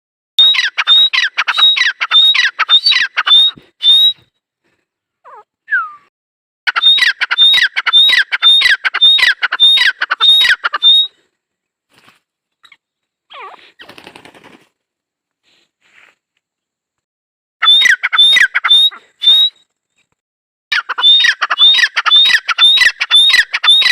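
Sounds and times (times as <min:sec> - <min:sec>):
francolin whistled calls: 0:00.4 - 0:04.2, 0:06.7 - 0:11.1, 0:17.6 - 0:19.7, 0:21.0 - 0:23.9.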